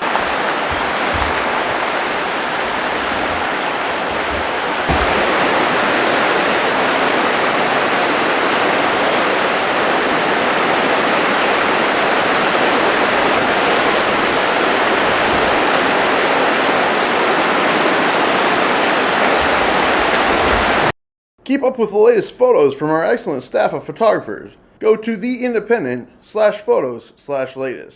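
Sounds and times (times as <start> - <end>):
floodwater rushing: 0.0 - 20.9.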